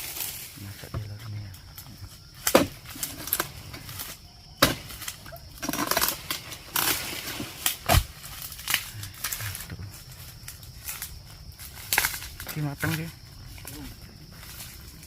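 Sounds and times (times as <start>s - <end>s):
dry palm fronds rustling: 0.0s - 15.0s
blade chopping palm stalks: 2.4s - 9.5s.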